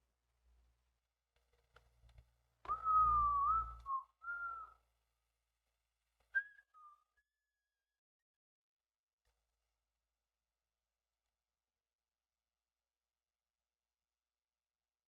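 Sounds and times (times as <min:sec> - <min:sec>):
person whistling: 0:02.7 - 0:04.7.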